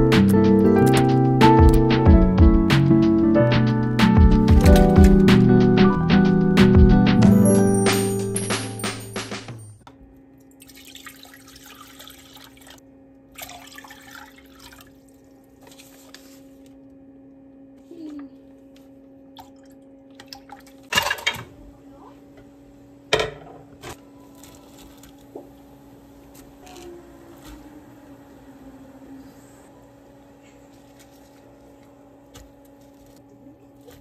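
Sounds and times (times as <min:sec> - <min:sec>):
low electrical hum: 0:09.8 - 0:34.0.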